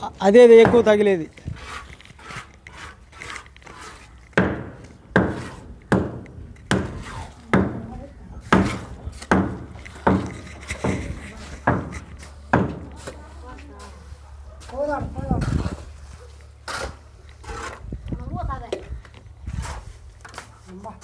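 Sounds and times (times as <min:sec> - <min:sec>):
hand hammer chipping at surface: 0:01.6 - 0:07.8, 0:08.5 - 0:12.9.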